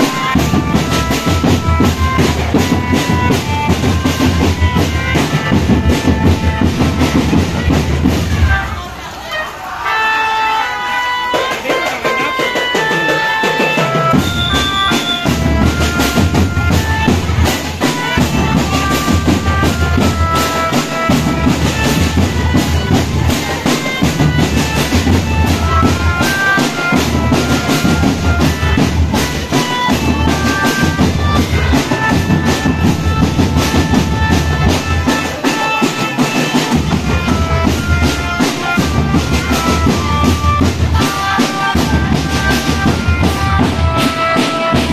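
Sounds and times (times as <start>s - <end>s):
snare drumming: 0.0s - 9.1s, 9.8s - 44.9s.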